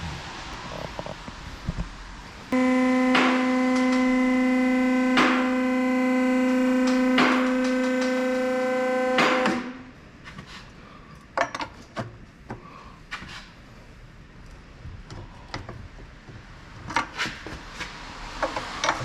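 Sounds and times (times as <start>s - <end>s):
sustained synthesizer tone: 2.5s - 10.0s.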